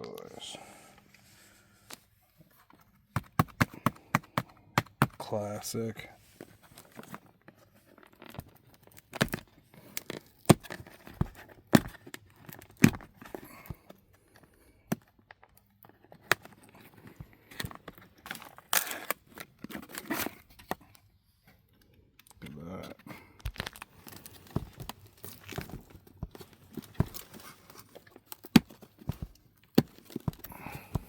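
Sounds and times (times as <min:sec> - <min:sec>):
cardboard boxes knocking: 0:03.2 - 0:05.2
cardboard tearing and crinkling: 0:08.0 - 0:13.8, 0:16.1 - 0:20.7, 0:23.4 - 0:31.0.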